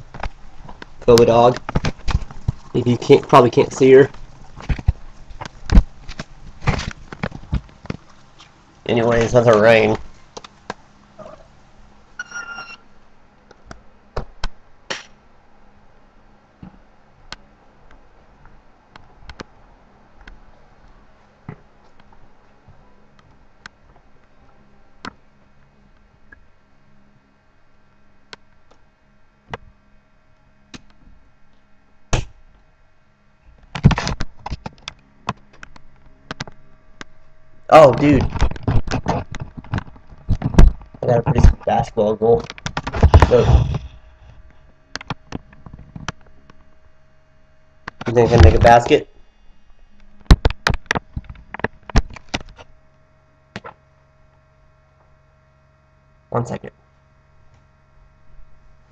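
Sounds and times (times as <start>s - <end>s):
rustling: 0.0s - 11.6s
faint steady hum: 0.0s - 58.9s
loud thump: 42.9s - 44.0s.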